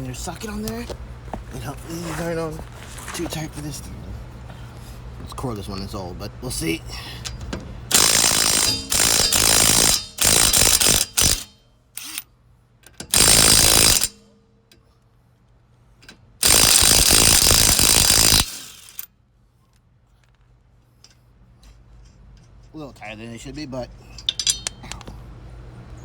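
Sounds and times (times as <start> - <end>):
impact wrench hammering lug nuts: 7.3 - 12.2, 12.9 - 14.3, 16.4 - 19.1, 24.2 - 25.0.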